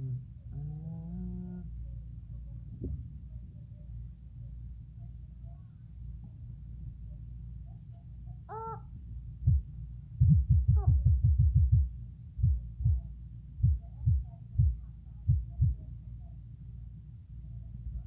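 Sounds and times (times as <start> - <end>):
low thuds: 9.4 - 13.0, 13.6 - 15.8.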